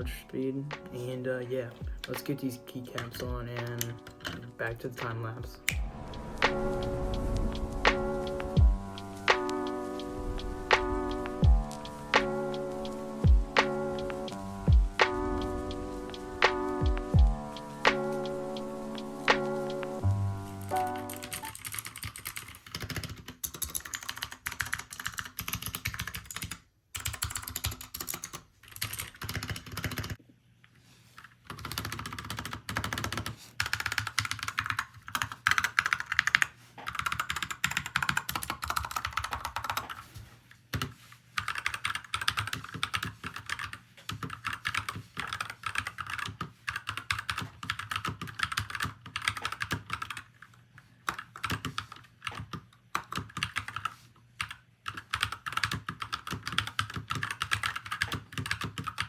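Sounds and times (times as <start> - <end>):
mechanical keyboard typing: 2.9 - 4.5, 20.6 - 30.2, 31.2 - 40.0, 40.7 - 50.5, 51.1 - 59.0.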